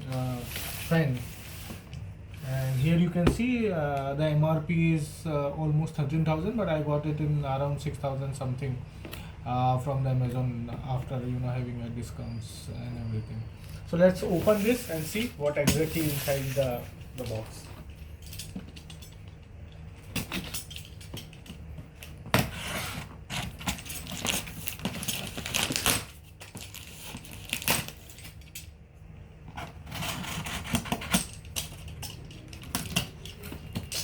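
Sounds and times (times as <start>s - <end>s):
cardboard scraping and tearing: 22.4s - 28.0s.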